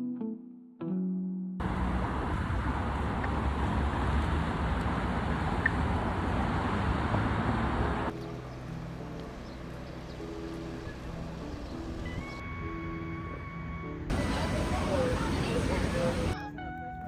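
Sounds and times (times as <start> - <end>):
road traffic rumble: 1.6 - 12.4, 14.1 - 16.4
faint background music: 8.1 - 17.0.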